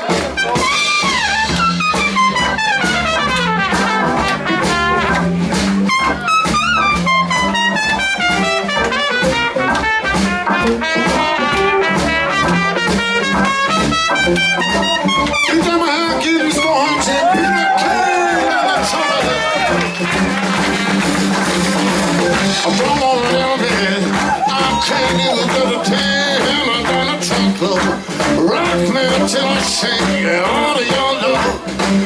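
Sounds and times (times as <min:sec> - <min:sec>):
blues-rock band playing: 0:00.0 - 0:32.0
horn solo: 0:00.2 - 0:22.9.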